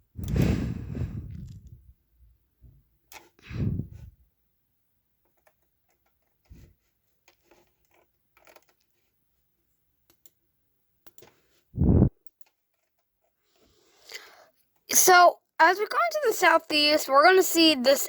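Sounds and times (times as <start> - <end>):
mouse and keyboard clicks: 11.0 - 11.4.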